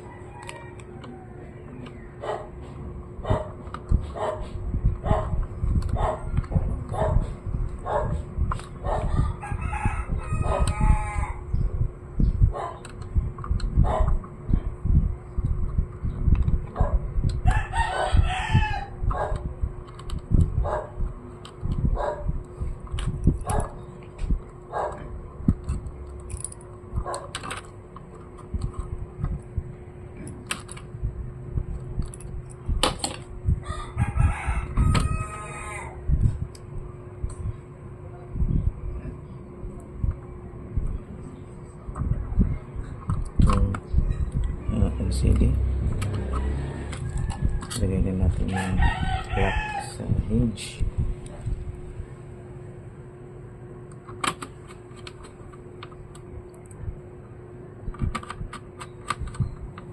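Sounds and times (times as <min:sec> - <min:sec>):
rooster crowing: 0:00.0 - 0:01.9, 0:08.9 - 0:11.5, 0:17.4 - 0:19.1, 0:33.6 - 0:36.1, 0:45.8 - 0:50.1
handling noise: 0:18.1 - 0:33.4, 0:42.0 - 0:49.6
clicks of laptop parts handled: 0:54.0 - 0:56.0.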